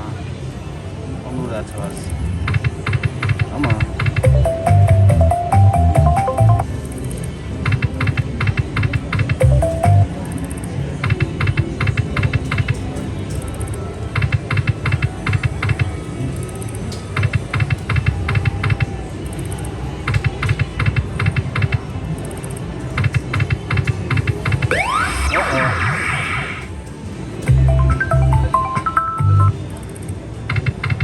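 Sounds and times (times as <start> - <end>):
background music: 2.2 - 17.4, 24.5 - 30.1
slot machine reels clicking: 4.0 - 7.2, 7.8 - 12.7.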